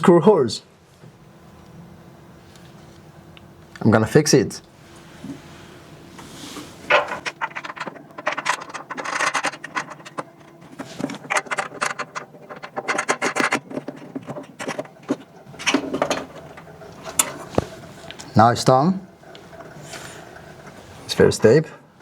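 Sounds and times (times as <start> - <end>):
threaded knobs scraping and clicking: 6.2 - 18.3.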